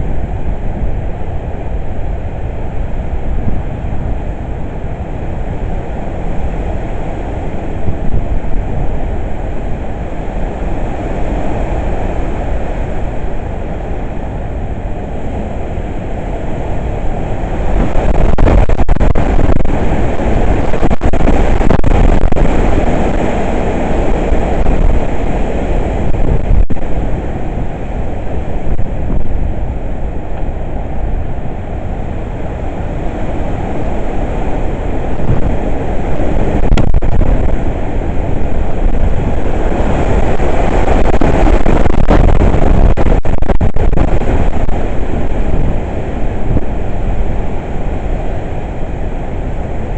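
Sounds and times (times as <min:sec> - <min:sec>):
strong wind buffeting microphone: 0:00.0 - 0:49.9.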